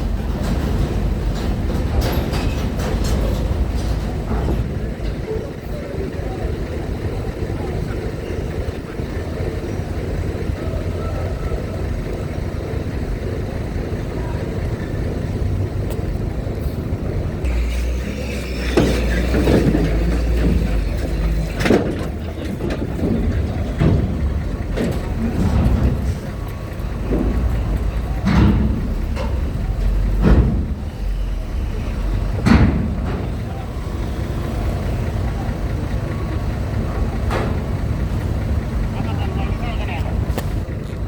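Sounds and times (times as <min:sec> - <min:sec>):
sharp knocks and clanks: 0:00.0 - 0:05.5, 0:17.4 - 0:38.7
heavy engine rumble: 0:00.0 - 0:41.0
vehicle engines running: 0:00.0 - 0:41.0.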